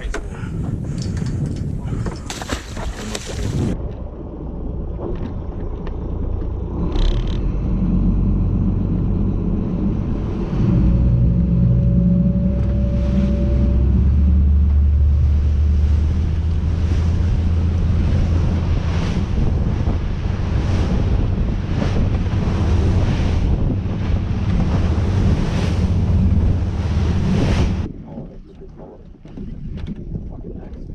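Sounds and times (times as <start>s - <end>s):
boat engine droning: 1.9s - 28.5s
thin whine: 10.6s - 16.5s.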